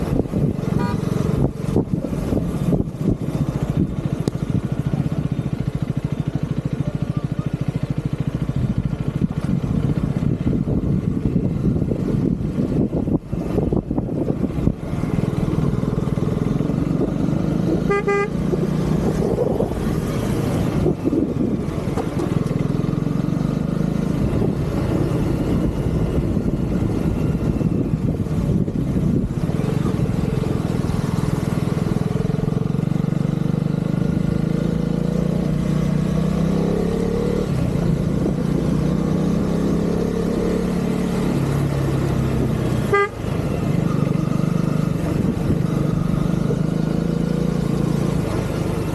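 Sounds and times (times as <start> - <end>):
motorcycle engine running: 0.0 - 48.9
horn toots: 0.7 - 1.2, 17.7 - 18.6, 42.8 - 43.4.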